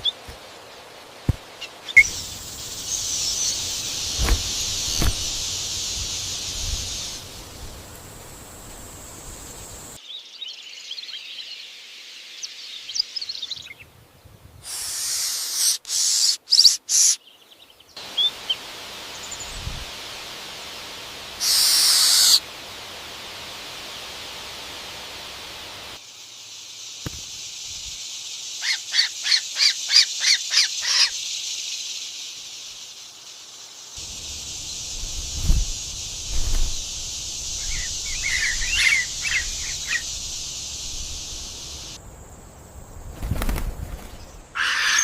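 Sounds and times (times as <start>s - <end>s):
steady outdoor hiss: 0.0s - 45.0s
birds calling and chirping: 1.5s - 11.6s, 21.4s - 22.4s, 28.5s - 31.3s, 34.0s - 42.0s, 43.2s - 45.0s.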